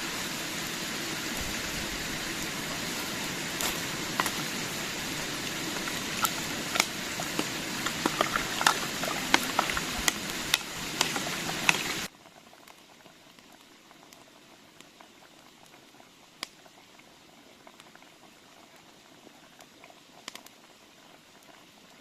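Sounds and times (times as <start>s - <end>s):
pot bubbling with hiss and pops: 0.0s - 22.0s.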